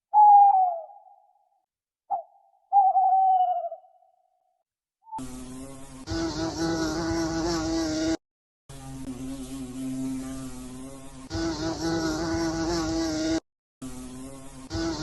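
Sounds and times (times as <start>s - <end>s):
steady buzzing drone: 5.2s - 15.0s.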